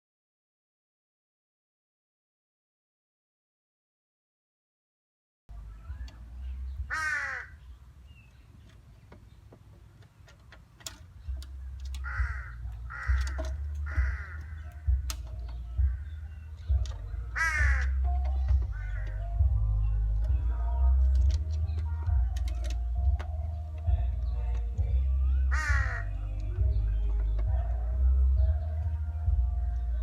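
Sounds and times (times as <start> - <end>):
crow cawing: 6.8 - 7.6, 12.0 - 15.0, 15.8 - 16.4, 17.3 - 18.1, 18.7 - 19.3, 25.5 - 26.2
faint clicks: 8.3 - 19.4.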